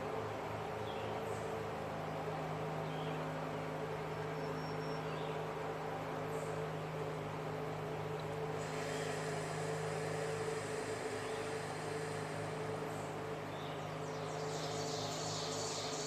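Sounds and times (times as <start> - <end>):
motor hum with low throb: 0.0 - 16.0
small bird chirping: 13.5 - 16.0.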